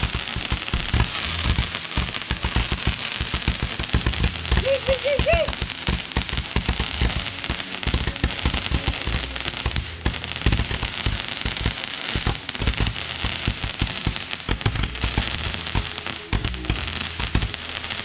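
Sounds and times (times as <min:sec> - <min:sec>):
fireworks bangs and crackling pops: 0:00.0 - 0:18.0.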